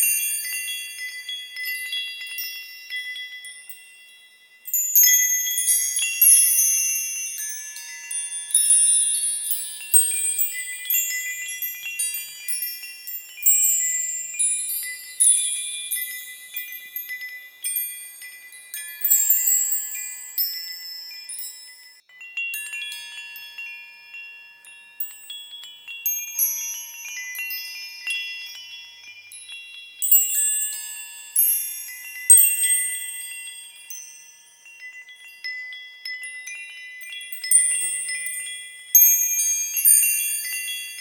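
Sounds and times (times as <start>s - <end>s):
high-pitched chimes ringing: 0.0s - 41.0s.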